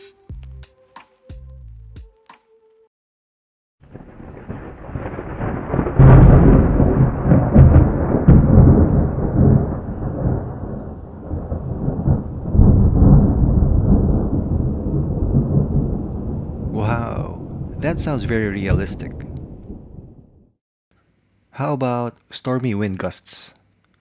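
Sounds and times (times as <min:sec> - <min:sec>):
rolling thunder rumbles: 0:03.8 - 0:20.6
thunder crack: 0:03.8 - 0:20.6.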